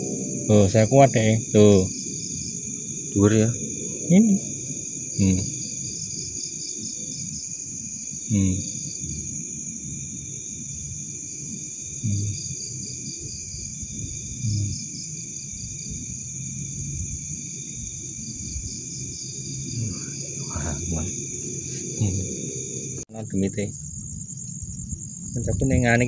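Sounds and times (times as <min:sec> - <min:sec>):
low rumble: 0:00.0 - 0:06.3, 0:13.3 - 0:14.8, 0:19.6 - 0:26.0
crickets and insects trilling: 0:00.0 - 0:26.0.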